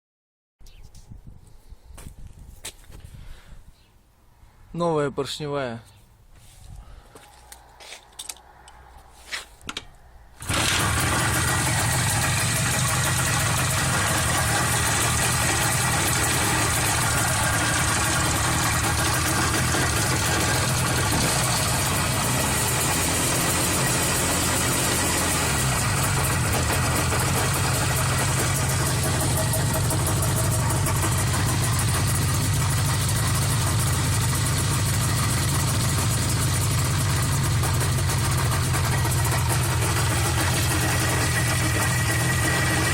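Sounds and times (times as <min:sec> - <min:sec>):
engine knocks: 0:09.7 - 0:42.9
motorcycle engine idling: 0:10.4 - 0:42.9.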